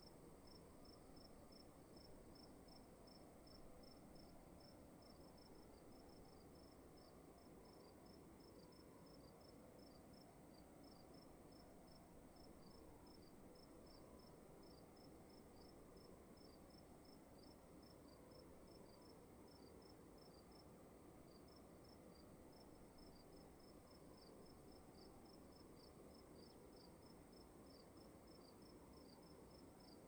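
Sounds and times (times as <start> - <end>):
crickets chirping: 0.0 - 20.6, 21.2 - 30.0
low room hiss: 0.0 - 30.0.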